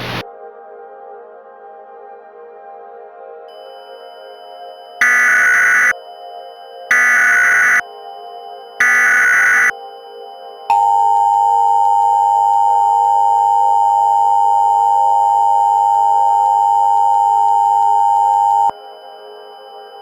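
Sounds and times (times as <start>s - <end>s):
two-tone alert tone: 4.1s - 7.8s, 8.5s - 20.0s.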